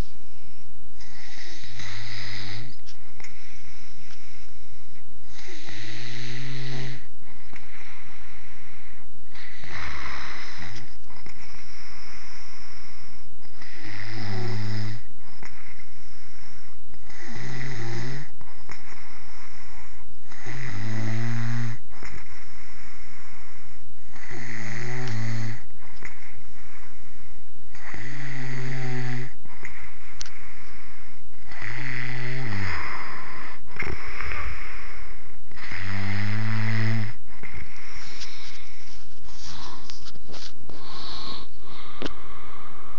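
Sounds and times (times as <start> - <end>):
man snoring loudly: 1.0 - 2.8, 5.3 - 7.1, 9.3 - 15.8, 17.0 - 22.5, 24.1 - 26.4, 27.7 - 30.3, 31.4 - 40.1, 40.7 - 42.9.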